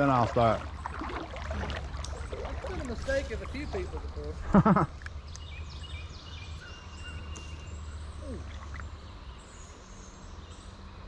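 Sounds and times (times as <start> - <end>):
creek low rumble: 0.0 - 10.9
faint high bird chirps: 5.2 - 11.0.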